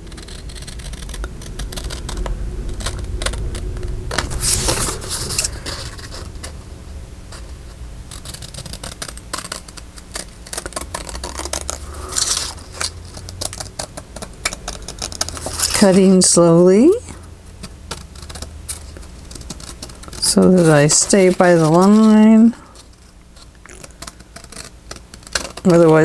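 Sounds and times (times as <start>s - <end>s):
scissors snipping paper: 0.0s - 2.2s, 4.1s - 6.2s, 8.1s - 26.0s
loud paper swishes: 4.1s - 6.6s, 9.8s - 16.3s, 18.7s - 23.5s.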